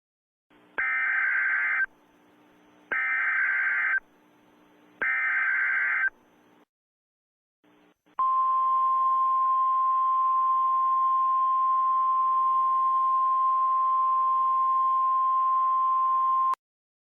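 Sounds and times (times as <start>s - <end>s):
faint radio hiss: 0.5s - 6.6s.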